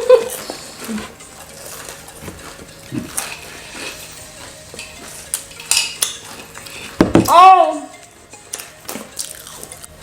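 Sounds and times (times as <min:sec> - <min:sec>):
clicks and rustles of eating: 0:08.5 - 0:10.0.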